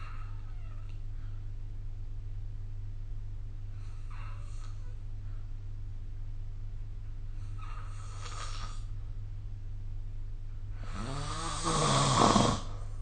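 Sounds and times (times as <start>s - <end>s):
steady low hum: 0.0s - 13.0s
person snoring: 10.8s - 12.9s.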